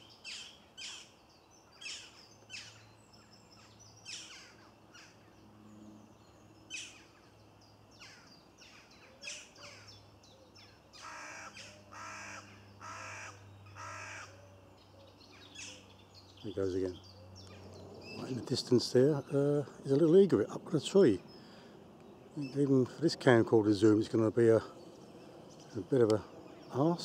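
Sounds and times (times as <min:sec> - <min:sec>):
jackdaw calling: 0:03.6 - 0:05.3, 0:08.0 - 0:16.0.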